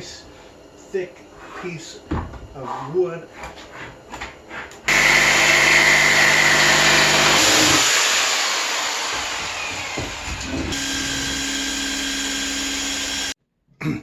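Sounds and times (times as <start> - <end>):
power tool cutting wood: 4.9 - 13.4
rough cutting noise: 4.9 - 13.4.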